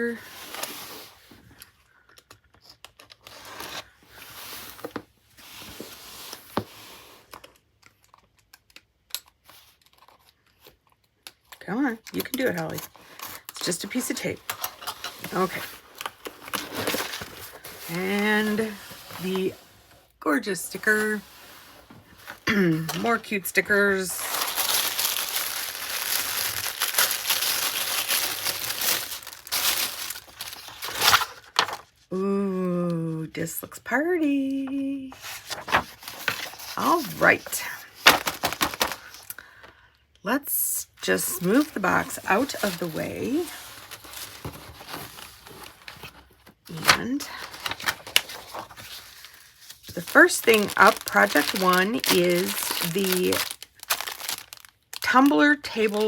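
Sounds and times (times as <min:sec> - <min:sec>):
packaging wrap crinkling: 0:12.3 - 0:19.6, 0:21.0 - 0:32.0, 0:35.1 - 0:39.6, 0:41.1 - 0:56.0
packing tape ripping: 0:24.2 - 0:31.8, 0:46.8 - 0:55.1.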